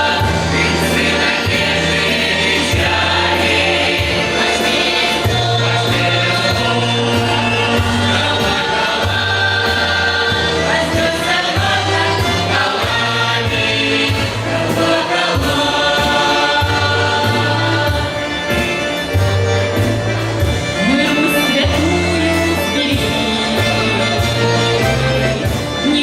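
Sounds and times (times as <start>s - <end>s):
choir singing: 0.0s - 19.3s, 20.8s - 26.0s
instrumental accompaniment: 0.0s - 26.0s.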